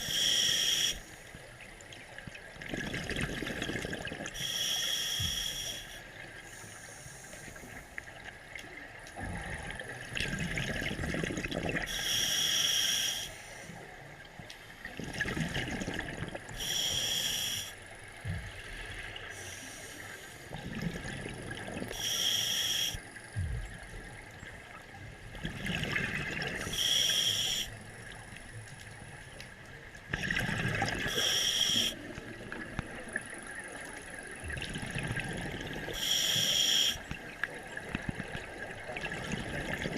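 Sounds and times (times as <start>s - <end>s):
scuba regulator inhale hiss: 0.0s - 1.4s, 4.3s - 8.0s, 11.9s - 13.8s, 16.5s - 17.8s, 18.5s - 20.6s, 21.9s - 23.1s, 26.6s - 27.8s, 31.0s - 32.0s, 35.9s - 37.1s
exhaled bubbles rushing: 2.6s - 4.4s, 9.2s - 11.9s, 14.8s - 16.5s, 20.5s - 22.0s, 25.3s - 26.7s, 30.1s - 31.3s, 34.3s - 36.0s, 37.0s - 39.9s.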